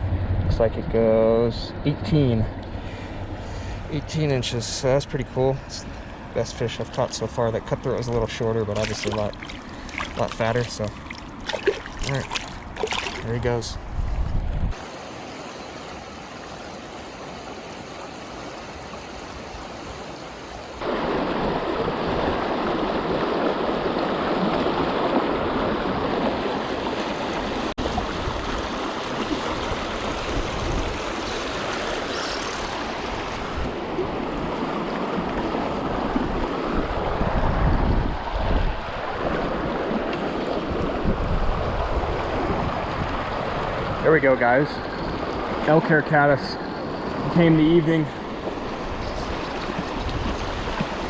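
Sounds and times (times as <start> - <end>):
river water rushing over rocks: 14.8 - 36.2.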